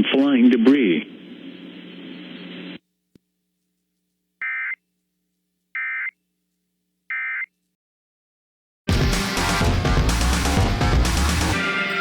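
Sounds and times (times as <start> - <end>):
broadcast hiss: 0.0 - 2.8.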